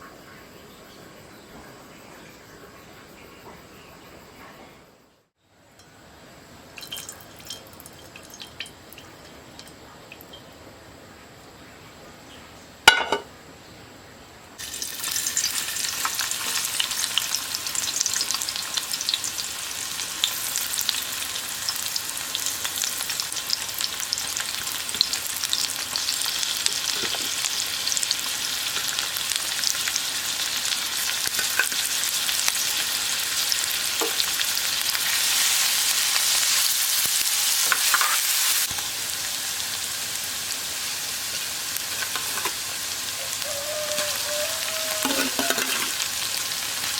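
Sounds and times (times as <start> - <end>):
food sizzling in hot oil: 6.7 - 10.4, 14.6 - 46.9.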